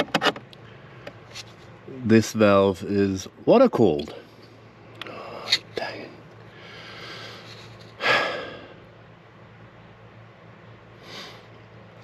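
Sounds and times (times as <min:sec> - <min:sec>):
faint low hum: 0:00.0 - 0:12.0
faint breath: 0:06.5 - 0:08.9, 0:11.0 - 0:11.6.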